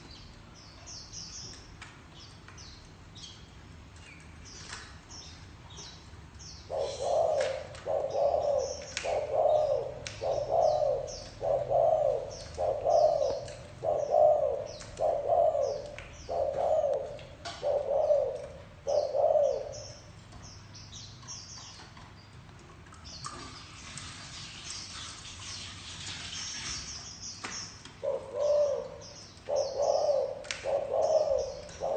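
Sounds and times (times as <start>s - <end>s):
small birds chirping faintly: 0.0s - 31.9s
dove cooing: 6.7s - 20.1s, 28.0s - 31.9s.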